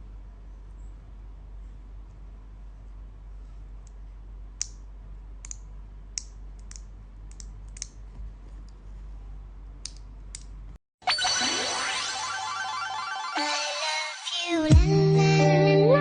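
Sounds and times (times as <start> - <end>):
low steady hum: 0.0 - 10.8.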